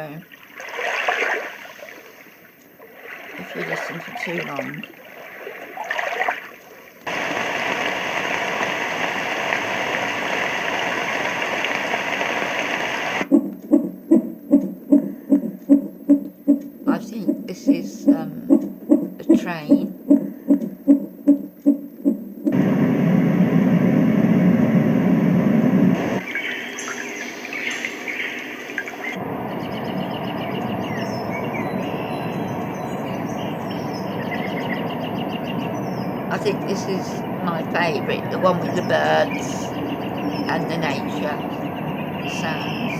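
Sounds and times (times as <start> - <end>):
birds chirping: 0.0 - 21.4, 26.0 - 42.9
white noise machine hiss: 7.0 - 13.3, 22.5 - 42.9
rhythmic chugging pulse: 28.6 - 42.9
recorded train rumbling clatter: 29.2 - 42.9.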